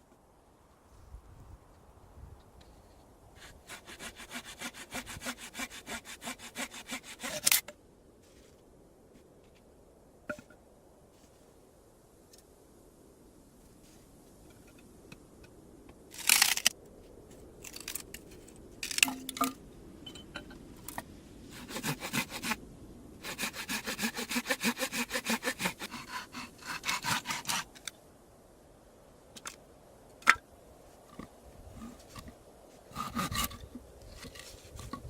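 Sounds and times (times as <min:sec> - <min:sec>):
hand saw cutting wood: 0:03.4 - 0:07.6, 0:21.5 - 0:22.6, 0:23.2 - 0:27.8, 0:32.9 - 0:33.6.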